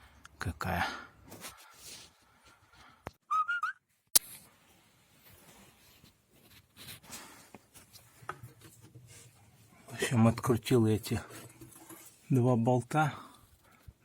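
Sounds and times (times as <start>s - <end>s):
short wavering whistle: 3.3s - 3.8s
faint clicks and shuffling: 4.4s - 12.3s.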